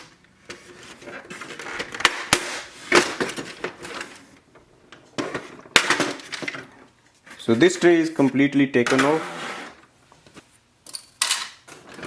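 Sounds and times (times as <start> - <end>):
plastic scraping rustles: 0.0 - 10.4
plastic parts clicking and knocking: 4.9 - 6.8.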